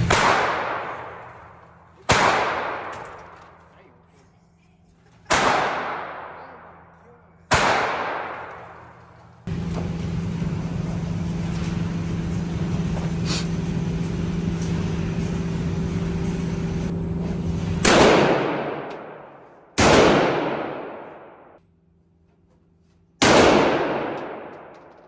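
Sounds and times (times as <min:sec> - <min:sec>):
gunshots with long echo: 0:00.0 - 0:03.6, 0:05.3 - 0:09.1, 0:17.8 - 0:21.6, 0:23.2 - 0:25.0
low mechanical hum: 0:00.0 - 0:25.0.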